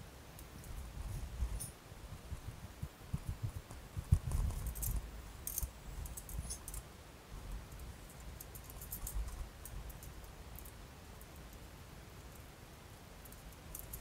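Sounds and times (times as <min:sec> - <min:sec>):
small clicks and jingles: 0:03.2 - 0:06.9, 0:07.7 - 0:11.6, 0:13.3 - 0:14.0.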